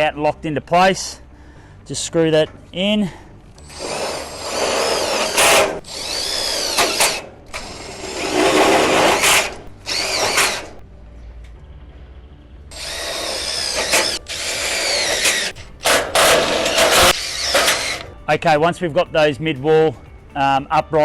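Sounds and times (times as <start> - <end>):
cordless drill driving screws: 3.6 - 10.8, 12.7 - 18.2.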